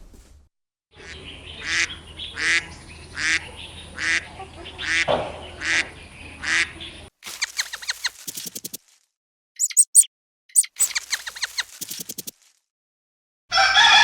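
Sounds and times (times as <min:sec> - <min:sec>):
duck quacking: 0:01.0 - 0:06.8.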